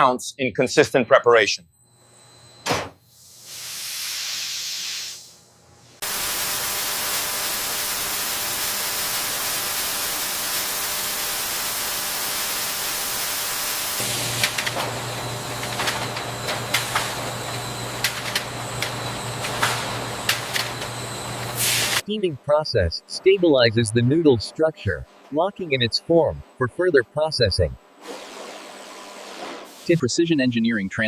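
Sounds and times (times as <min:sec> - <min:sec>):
steam hissing: 0:03.2 - 0:05.4, 0:06.0 - 0:22.0
low machine hum: 0:14.0 - 0:27.9.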